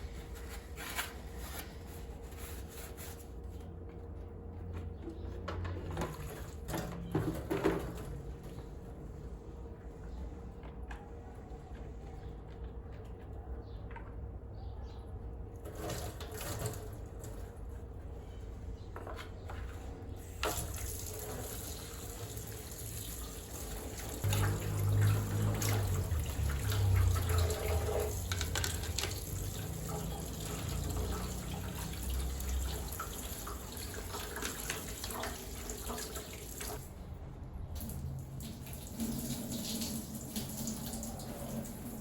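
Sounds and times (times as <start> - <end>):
water running from a tap: 20.2 - 36.9, 37.8 - 42.0.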